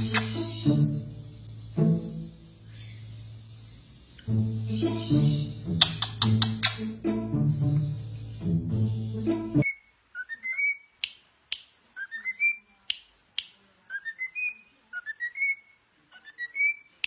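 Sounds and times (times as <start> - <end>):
music: 0.0 - 9.7.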